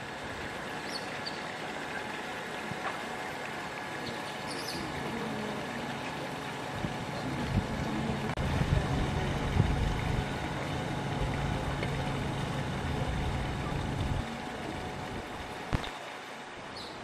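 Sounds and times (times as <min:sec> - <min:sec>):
engine running with low hum: 0:00.0 - 0:16.6.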